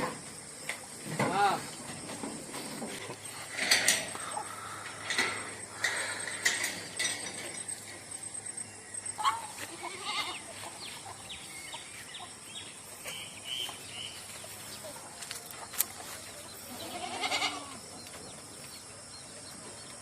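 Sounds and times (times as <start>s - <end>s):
goat bleating: 9.6s - 10.5s, 16.7s - 17.8s.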